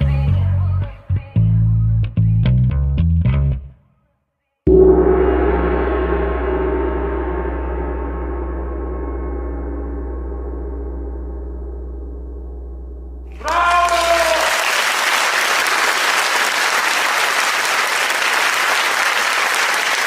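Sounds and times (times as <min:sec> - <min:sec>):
gong-like metallic ring: 0:04.7 - 0:13.5
steady low drone: 0:04.7 - 0:13.5.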